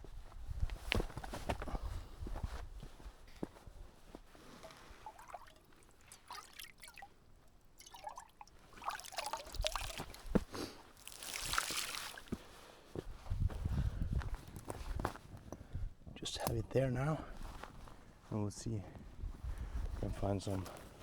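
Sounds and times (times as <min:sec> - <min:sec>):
water splashing into a pot: 0:04.6 - 0:10.4, 0:11.0 - 0:12.3.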